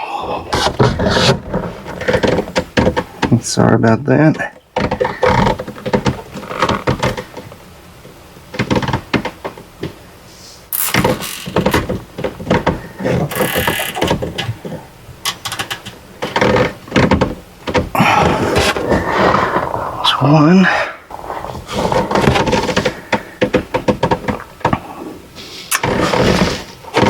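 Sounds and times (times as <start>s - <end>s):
rustling: 0.0s - 27.0s
clicks and knocks: 21.8s - 24.9s.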